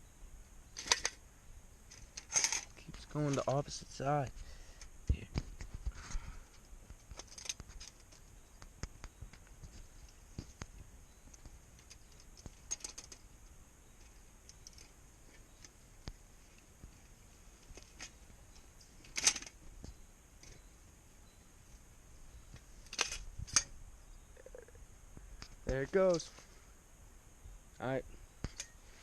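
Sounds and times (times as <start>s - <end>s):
wire trap rattling and clicking: 0.8s - 1.2s, 1.9s - 2.7s, 7.0s - 8.2s, 11.4s - 13.2s, 19.0s - 19.6s, 22.8s - 23.7s.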